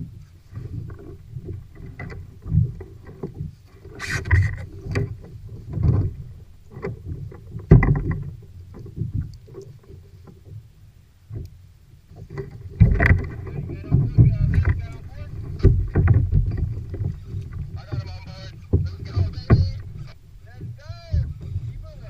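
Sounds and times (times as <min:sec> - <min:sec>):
water splashing against kayak: 0:00.0 - 0:22.0
bumps and knocks: 0:04.1 - 0:10.5, 0:12.2 - 0:22.0.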